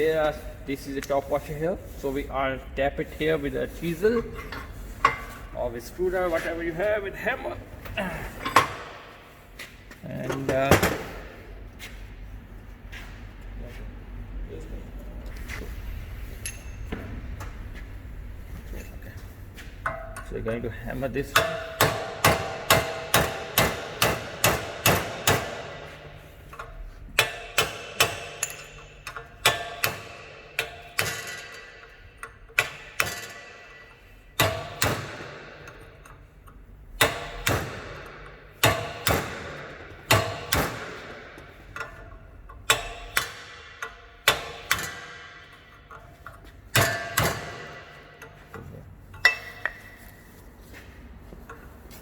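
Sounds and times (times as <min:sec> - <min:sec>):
hammer striking chisel on metal: 0:21.2 - 0:36.2, 0:37.0 - 0:48.5, 0:49.1 - 0:50.2.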